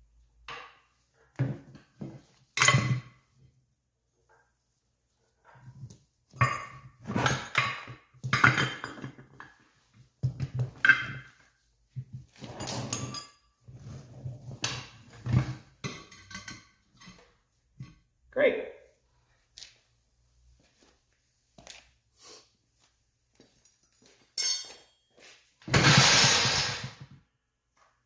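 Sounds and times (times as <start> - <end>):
metal clanks and rattles: 25.7 - 27.1.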